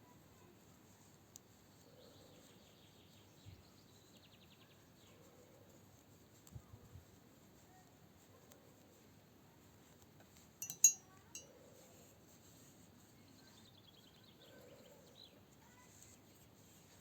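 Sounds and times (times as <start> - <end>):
knitting needles clinking: 10.6 - 11.5.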